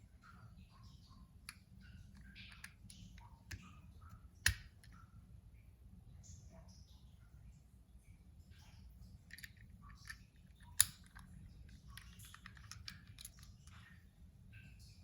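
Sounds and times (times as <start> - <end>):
toy car clicks and taps: 2.2 - 3.6, 4.4 - 4.9, 9.3 - 13.8.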